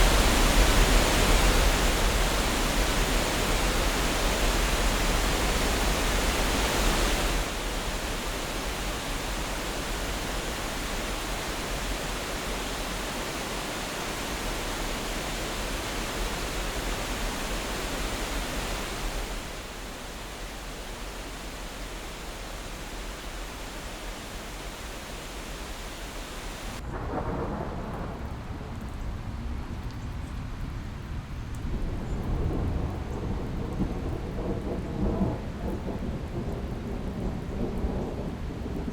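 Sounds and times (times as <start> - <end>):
rushing water: 0.0 - 26.8.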